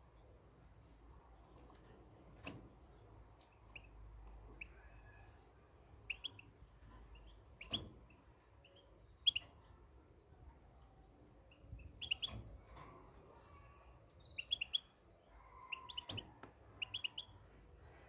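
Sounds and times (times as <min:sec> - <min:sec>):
finch chirping: 0:03.4 - 0:05.4, 0:06.0 - 0:09.8, 0:11.4 - 0:12.8, 0:14.1 - 0:17.5.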